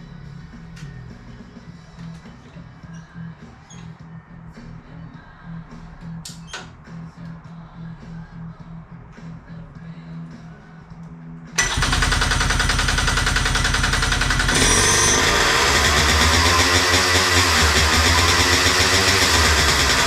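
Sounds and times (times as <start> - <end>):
two-stroke go-kart engine: 11.6 - 20.0.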